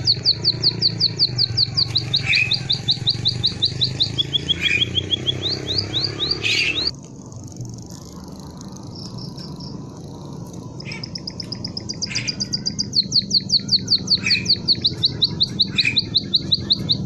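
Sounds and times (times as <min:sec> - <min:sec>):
songbird singing whistled notes: 0:00.0 - 0:06.9, 0:10.7 - 0:17.0
steady low hum: 0:00.0 - 0:17.0.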